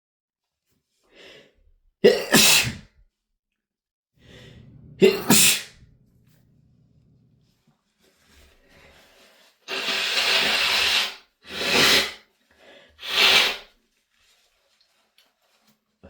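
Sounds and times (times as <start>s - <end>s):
man sneezing: 2.0s - 2.9s, 4.8s - 5.8s.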